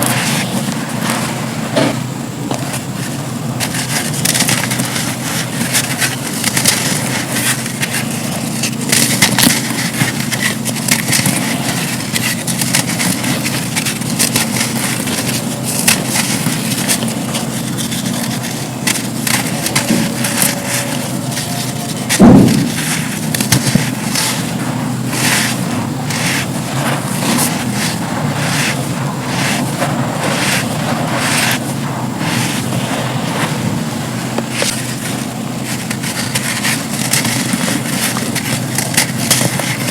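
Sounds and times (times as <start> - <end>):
crumbling sand crackling: 0.0 - 39.9
steady low hum: 0.0 - 39.9
heavy thump: 21.6 - 26.2.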